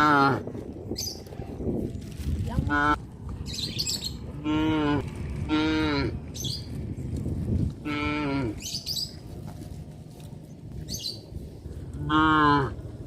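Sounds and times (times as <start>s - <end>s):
cattle mooing: 4.4s - 6.2s, 7.8s - 8.6s, 12.0s - 12.8s.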